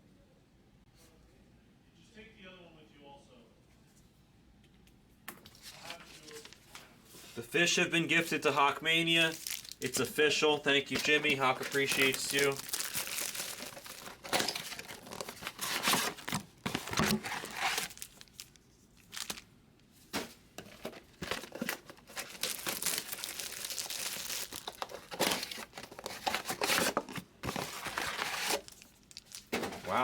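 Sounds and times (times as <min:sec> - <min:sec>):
packaging crinkling and tearing: 0:08.2 - 0:19.5, 0:21.1 - 0:30.0.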